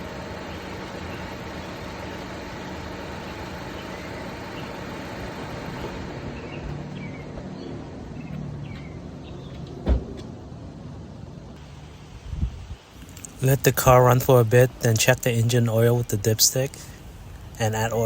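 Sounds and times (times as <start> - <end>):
car engine idling: 0.0 - 9.5, 11.6 - 18.0
loud thump: 9.8 - 10.3.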